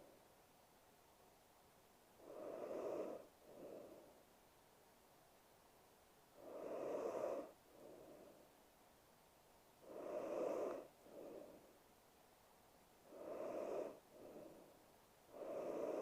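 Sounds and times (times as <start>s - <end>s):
woman breathing heavily: 2.2s - 4.3s, 6.4s - 8.6s, 9.9s - 11.8s, 13.1s - 16.0s.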